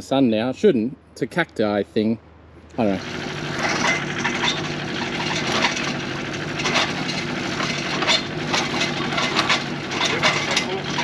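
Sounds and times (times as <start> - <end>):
engine running: 2.6 - 11.0.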